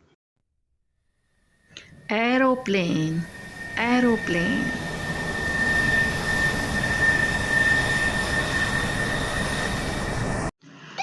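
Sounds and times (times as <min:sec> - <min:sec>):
jet engine whine: 0:01.3 - 0:10.5.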